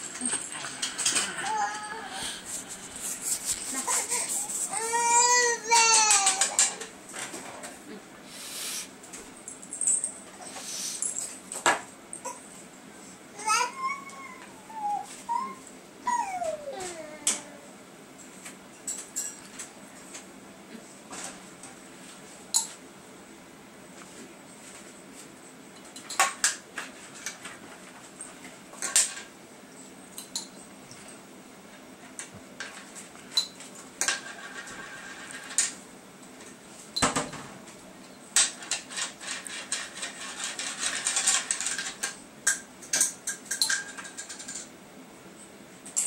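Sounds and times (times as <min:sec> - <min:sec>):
cutlery clinking on dishes: 0:38.4 - 0:44.7.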